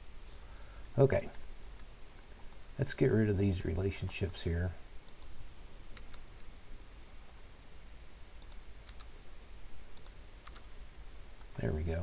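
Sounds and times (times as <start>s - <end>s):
steady low hum: 0.0s - 12.0s
computer mouse clicks: 5.1s - 5.3s, 5.9s - 6.5s, 8.4s - 9.1s, 10.0s - 10.7s.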